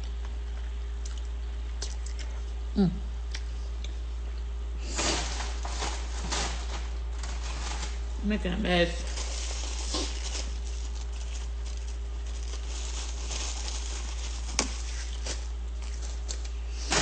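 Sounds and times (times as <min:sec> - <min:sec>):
eating noises: 0:00.0 - 0:02.7
steady low hum: 0:00.0 - 0:17.0.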